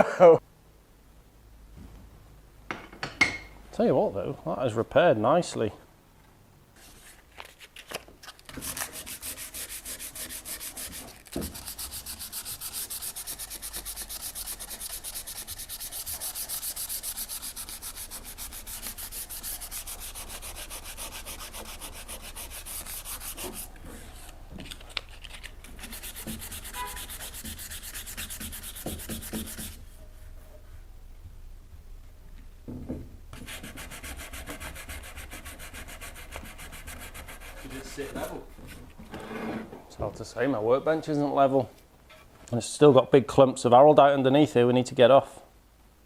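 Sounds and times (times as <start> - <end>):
sandpaper rubbing on stone: 8.6 - 24.3, 25.8 - 29.8, 33.4 - 38.3.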